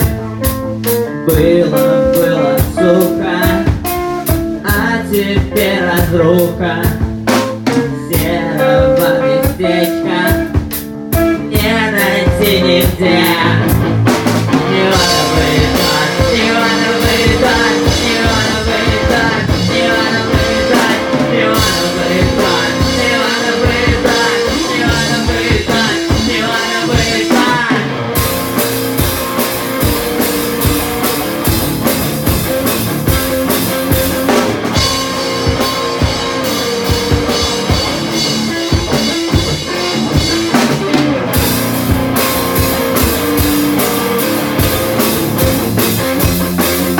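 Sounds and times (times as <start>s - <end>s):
instrumental rock music: 0.0s - 46.9s.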